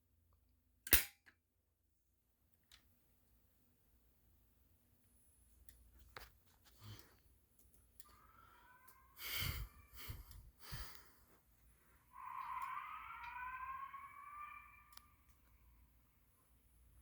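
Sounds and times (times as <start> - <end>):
rising whoop alarm tone: 8.0 - 11.0, 12.0 - 16.2.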